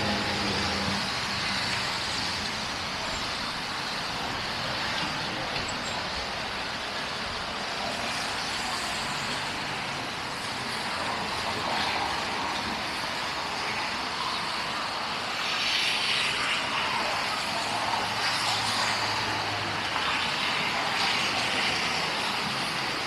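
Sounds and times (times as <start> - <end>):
passing traffic hiss: 0.0 - 23.0.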